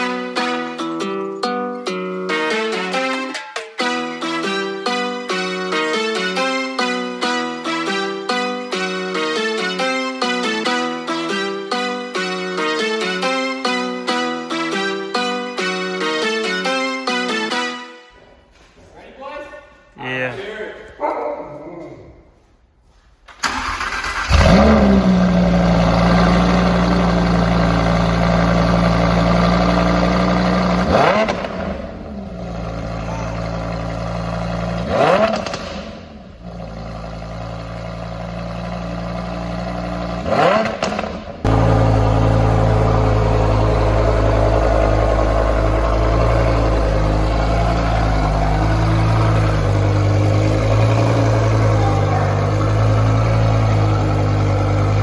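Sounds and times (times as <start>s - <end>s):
sports car engine starting: 23.3s - 55.0s
engine revving: 23.4s - 55.0s
engine idling: 23.5s - 34.9s, 40.8s - 55.0s.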